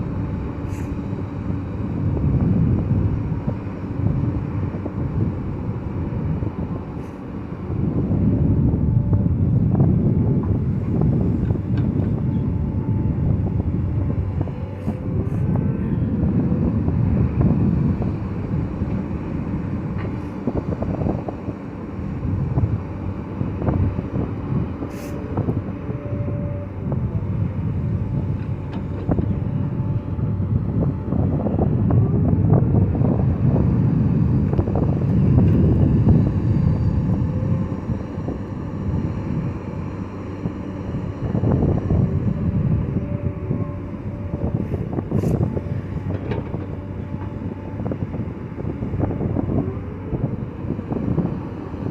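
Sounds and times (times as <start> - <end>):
heavy diesel machinery rumbling: 0.0 - 51.9.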